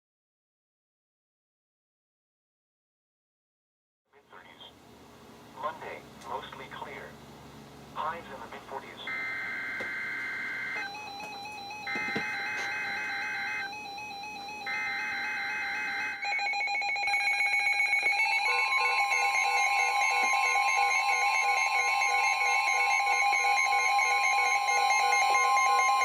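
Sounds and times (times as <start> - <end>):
radio alert alarms beeping: 8.0 - 26.0
steady warning alarm tone: 8.8 - 26.0
two-tone data warble: 9.0 - 26.0.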